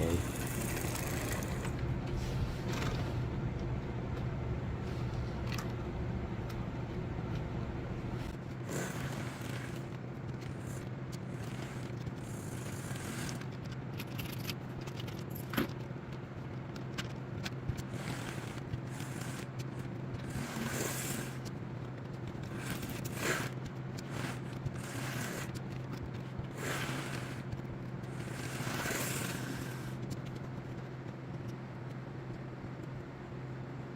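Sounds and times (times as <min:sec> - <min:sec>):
wheels clicking on rails: 0:08.3 - 0:32.0.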